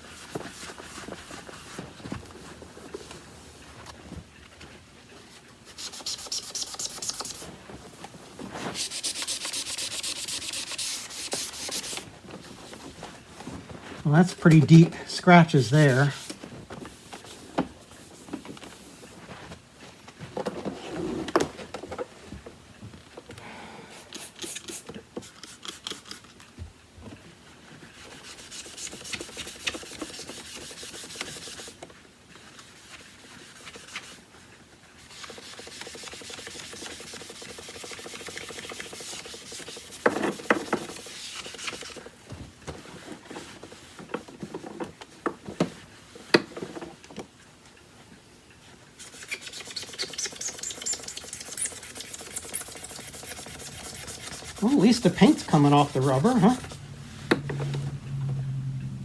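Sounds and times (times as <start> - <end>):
sponge scrubbing plastic: 5.7 - 18.5, 27.9 - 31.8, 35.0 - 42.1, 49.0 - 58.1.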